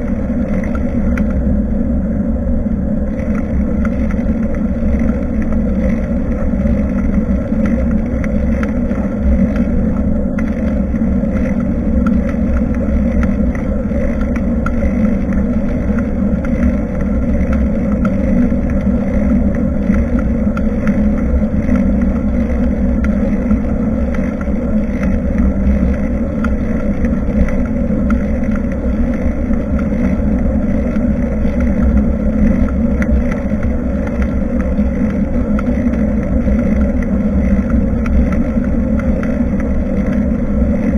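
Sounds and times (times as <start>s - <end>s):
faint clicks: 0.0s - 1.5s, 3.1s - 40.9s
road noise: 0.0s - 40.9s
wind noise: 0.0s - 40.9s.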